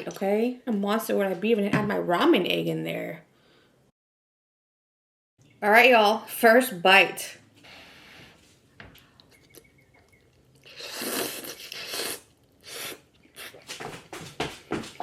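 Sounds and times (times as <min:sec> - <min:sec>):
wet chewing and mouth smacks: 0:09.2 - 0:13.7
person slurping noodles: 0:10.6 - 0:13.7.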